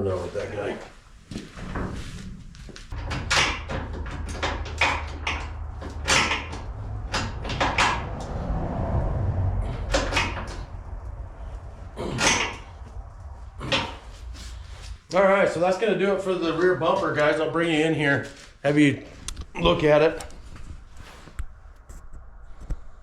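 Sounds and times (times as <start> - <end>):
steady low hum: 0.0 - 19.6
metal knocks and clanks: 2.9 - 15.1.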